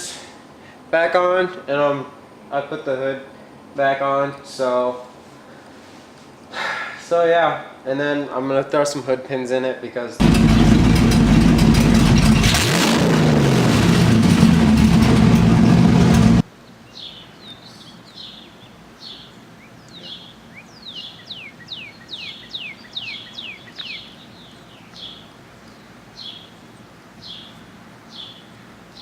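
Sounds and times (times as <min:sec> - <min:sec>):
car engine revving: 0:10.2 - 0:16.4
bird chirping: 0:16.6 - 0:29.0.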